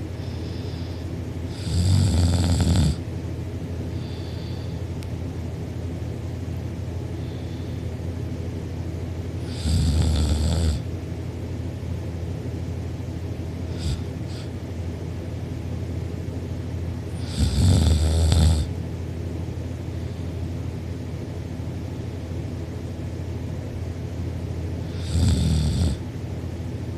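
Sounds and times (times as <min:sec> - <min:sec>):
person snoring loudly: 0:01.5 - 0:03.0, 0:09.4 - 0:10.9, 0:13.7 - 0:14.5, 0:17.1 - 0:18.7, 0:24.9 - 0:26.0.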